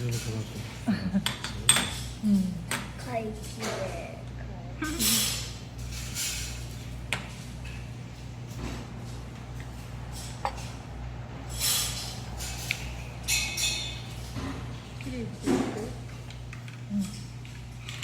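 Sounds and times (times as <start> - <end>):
tableware clinking: 0.0 - 2.9, 4.8 - 7.9, 11.5 - 14.6.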